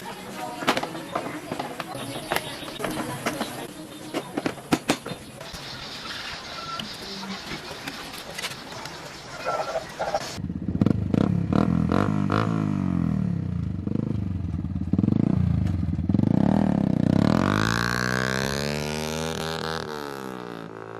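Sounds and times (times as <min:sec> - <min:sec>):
motorcycle engine revving: 0:09.4 - 0:20.9.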